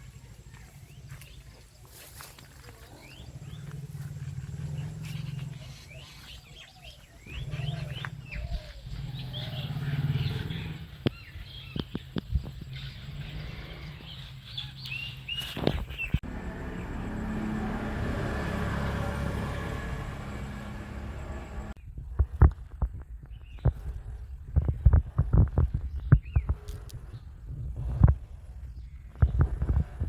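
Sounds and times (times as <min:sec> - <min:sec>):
small birds chirping: 0:00.0 - 0:22.0, 0:23.0 - 0:30.0
low steady rumble: 0:16.2 - 0:22.6.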